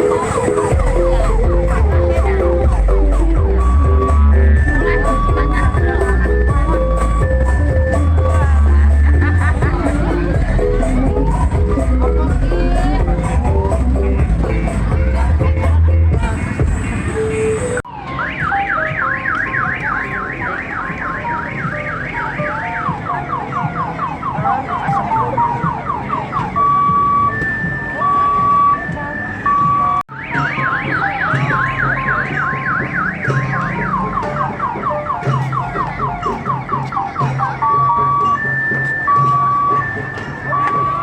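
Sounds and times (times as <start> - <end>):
electronic alarm siren: 17.5 - 41.0.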